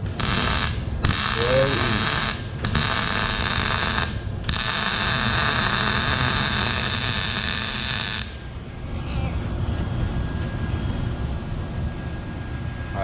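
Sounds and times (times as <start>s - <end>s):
welding arc hissing: 0.0s - 8.4s.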